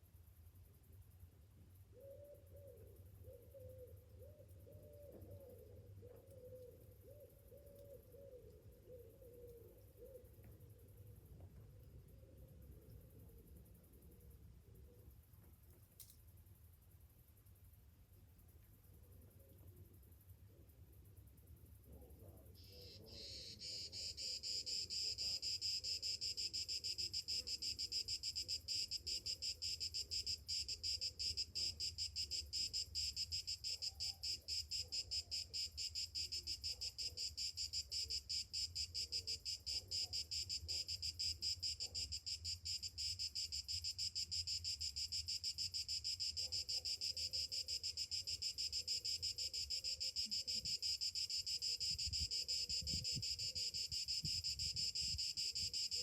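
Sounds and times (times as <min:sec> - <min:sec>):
cicadas buzzing: 0:22.6 - 0:56.0.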